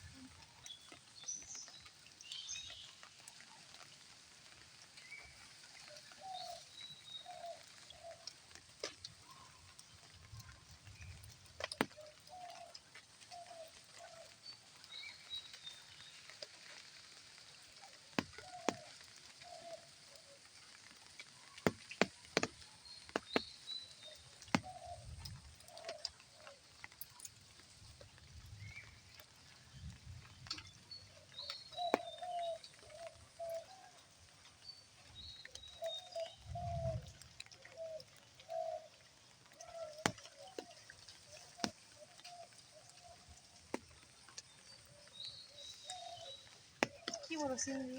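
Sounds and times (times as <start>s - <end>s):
birds calling: 30.5s - 33.9s, 39.5s - 47.9s.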